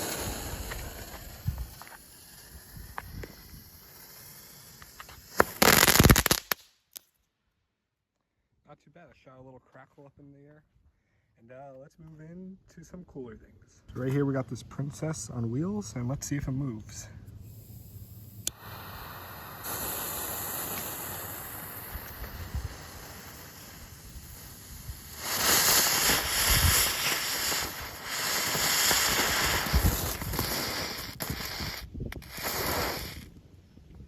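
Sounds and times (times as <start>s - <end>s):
firework hissing and sputtering: 0.0s - 6.8s, 17.2s - 33.4s
sharp firework pops: 0.0s - 7.0s, 18.4s - 33.4s.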